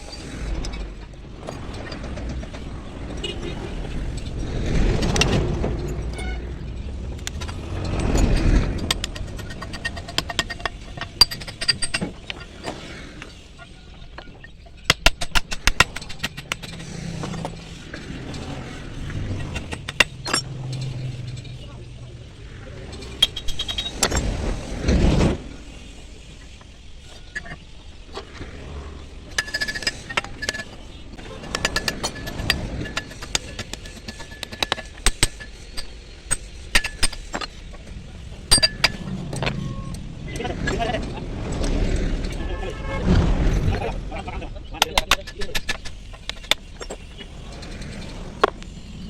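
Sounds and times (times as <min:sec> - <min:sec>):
metallic clicks and clinks: 0:00.0 - 0:13.4, 0:14.1 - 0:24.6, 0:28.2 - 0:41.7
low steady rumble: 0:00.0 - 0:49.0.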